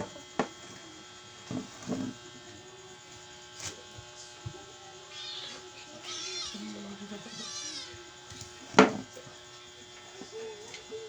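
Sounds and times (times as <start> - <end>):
electrical hum: 0.0 - 11.0
cat meowing: 5.1 - 8.1.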